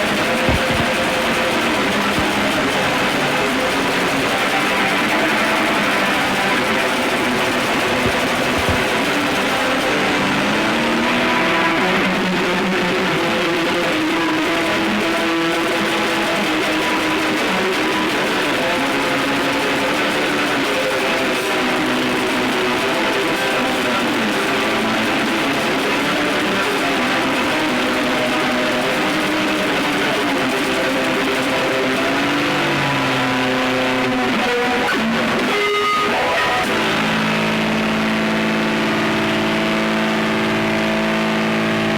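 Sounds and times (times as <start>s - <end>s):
distorted drone music: 0.0s - 12.8s.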